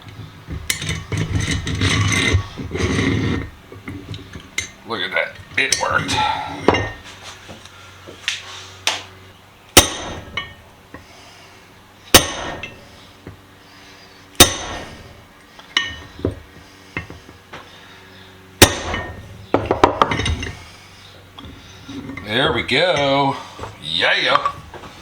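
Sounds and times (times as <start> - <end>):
hammer striking metal punch: 9.8 - 10.6, 12.1 - 12.8, 14.4 - 15.1, 18.6 - 20.6.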